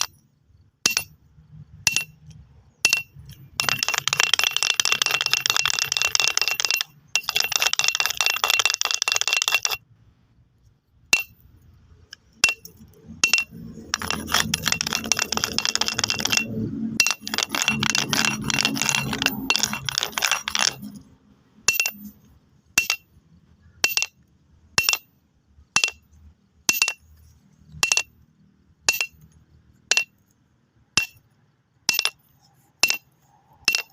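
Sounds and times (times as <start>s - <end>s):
stone striking stone clicks: 0.0s - 0.2s, 0.9s - 9.8s, 11.1s - 21.1s, 21.7s - 25.2s, 25.8s - 28.2s, 28.8s - 30.4s, 31.0s - 31.3s, 31.9s - 33.9s
stones rattling and clattering: 0.0s - 0.3s, 0.9s - 9.8s, 12.0s - 22.2s, 22.8s - 25.1s, 26.7s - 28.3s, 28.9s - 30.4s, 31.9s - 33.9s.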